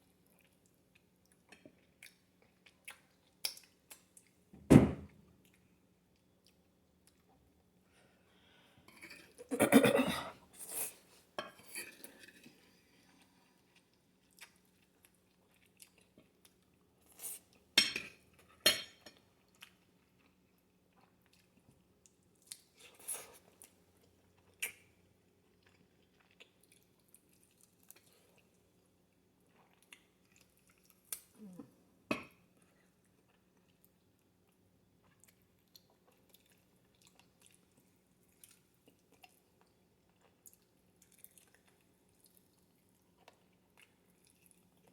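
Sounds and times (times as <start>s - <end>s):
person chewing: 13.1s - 17.4s, 25.5s - 28.5s
cutlery clinking on dishes: 17.8s - 19.2s.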